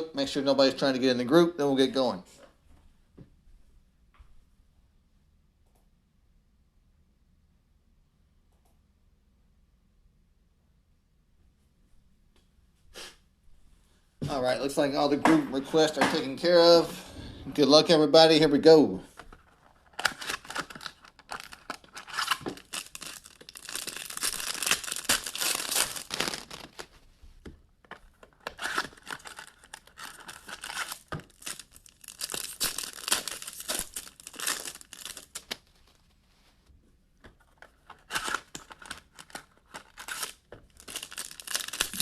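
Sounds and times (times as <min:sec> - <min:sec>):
packaging torn and crinkled: 0:19.5 - 0:27.0, 0:28.2 - 0:35.8, 0:37.6 - 0:42.0.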